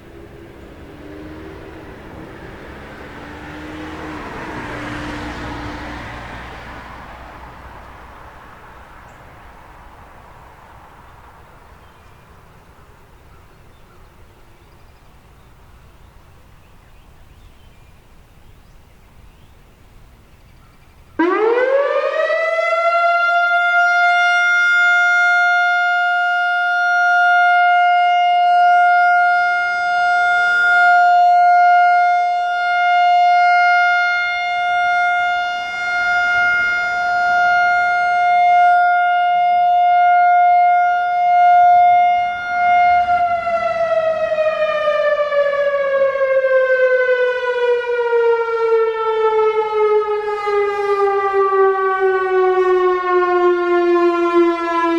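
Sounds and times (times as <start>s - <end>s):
electronic warning siren: 0.0s - 7.0s, 21.2s - 54.9s.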